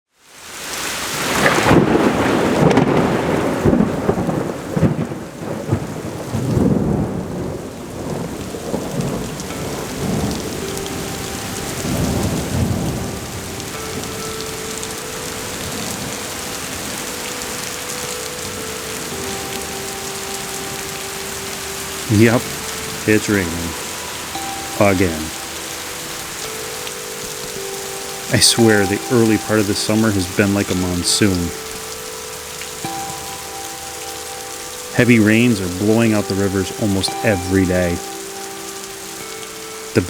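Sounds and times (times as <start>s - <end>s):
heavy rain: 0.2s - 40.0s
thunder rumbling: 1.2s - 14.6s.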